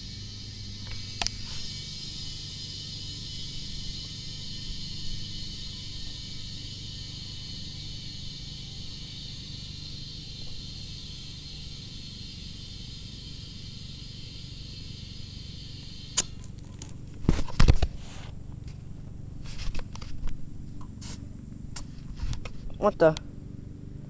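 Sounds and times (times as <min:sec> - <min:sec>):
air hissing through hose: 0:00.0 - 0:23.2
valve chuck click: 0:00.8 - 0:01.5, 0:15.8 - 0:17.9.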